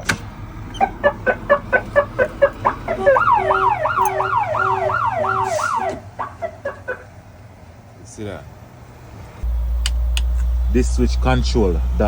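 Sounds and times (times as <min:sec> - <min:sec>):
rising and falling alarm warble: 0:00.7 - 0:07.1.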